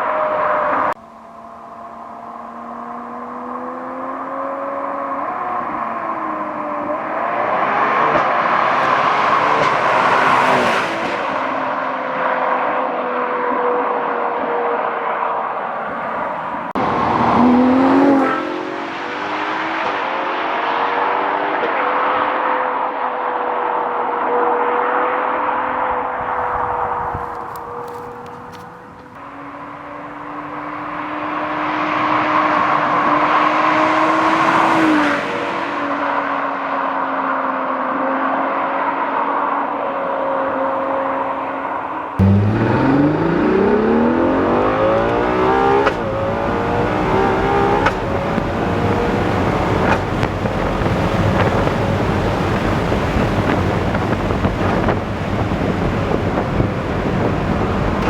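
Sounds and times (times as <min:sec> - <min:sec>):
engine revving: 0:00.0 - 0:13.1, 0:15.9 - 0:23.2, 0:40.8 - 0:58.0
car engine accelerating: 0:00.0 - 0:58.0.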